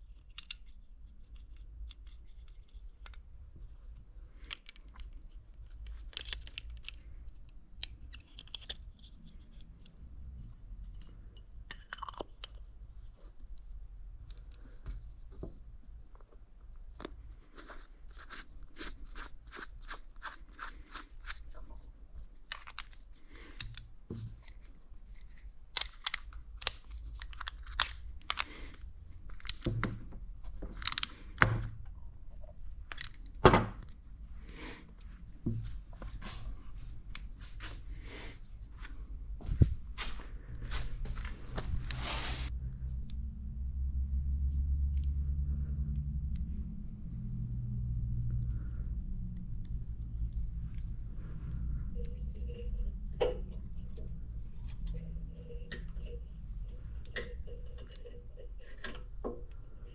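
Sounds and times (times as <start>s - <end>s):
low steady hum: 20.5s - 59.9s
hand tools clicking and scraping: 51.6s - 59.9s.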